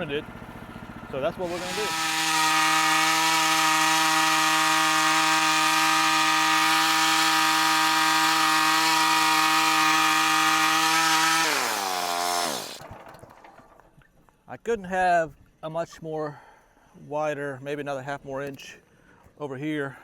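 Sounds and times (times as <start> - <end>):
sawmill gas engine running: 0.0 - 12.9
band blade cutting log: 1.3 - 12.8.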